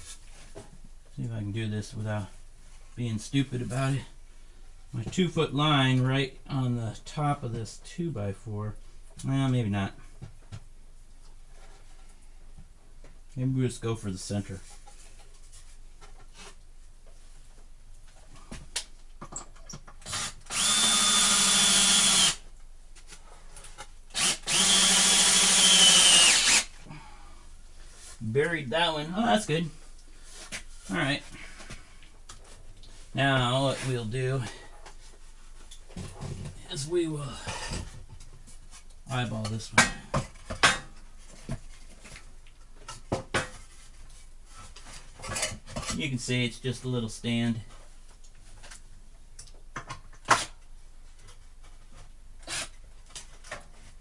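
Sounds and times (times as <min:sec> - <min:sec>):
power drill driving screw into wood: 0:20.0 - 0:22.4, 0:24.1 - 0:26.7.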